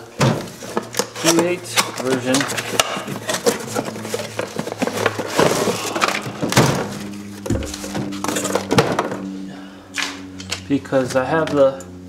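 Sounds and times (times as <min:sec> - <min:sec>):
hard items clicking and knocking: 0:00.2 - 0:09.3.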